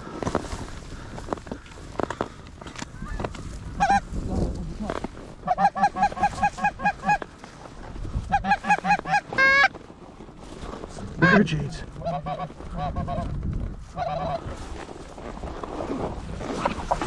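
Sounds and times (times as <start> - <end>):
geese honking: 5.4 - 7.3, 8.2 - 9.7, 11.2 - 13.2, 13.9 - 14.5.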